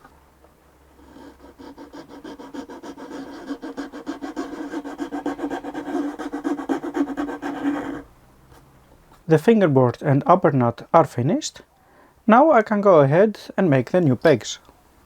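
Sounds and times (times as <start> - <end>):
abrasive hand tool rubbing wood: 0.9 - 8.1.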